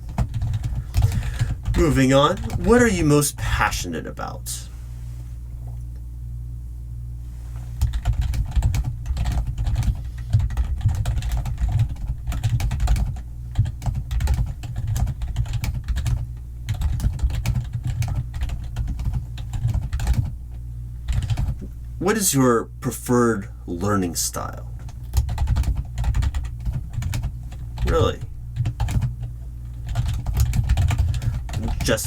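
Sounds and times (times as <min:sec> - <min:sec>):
steady low hum: 0:00.0 - 0:32.0
fast typing on keyboard: 0:00.1 - 0:02.8, 0:07.8 - 0:20.4, 0:21.1 - 0:21.6, 0:24.8 - 0:32.0.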